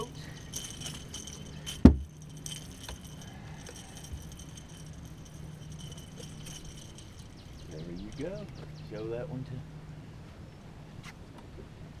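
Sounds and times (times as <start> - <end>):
light clicks and rattles: 0.0 - 8.7
low steady hum: 0.0 - 11.0
heavy thump: 1.6 - 2.9.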